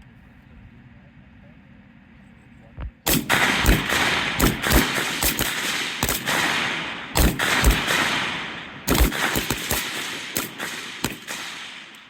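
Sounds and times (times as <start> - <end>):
rifle shots echoing: 3.1 - 12.0.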